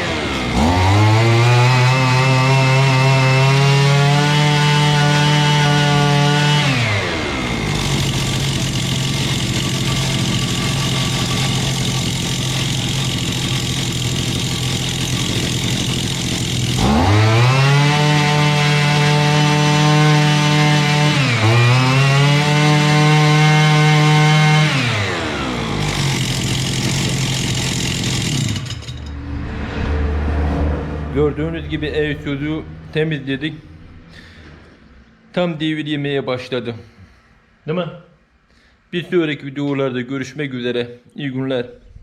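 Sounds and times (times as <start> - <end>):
brushcutter engine revving: 0.0 - 28.9.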